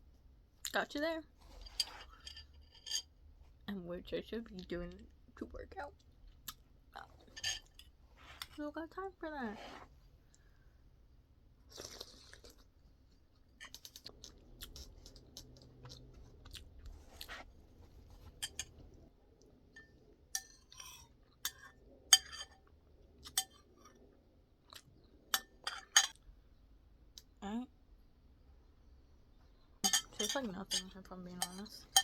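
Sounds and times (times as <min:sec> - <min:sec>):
chewing and mouth sounds: 0:11.7 - 0:18.5.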